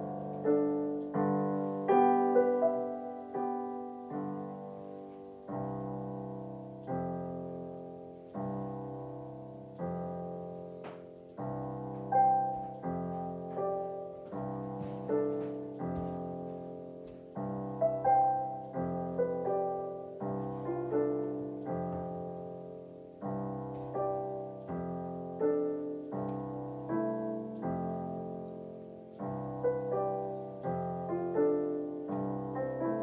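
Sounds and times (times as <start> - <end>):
piano playing slow chords: 0.0 - 33.0.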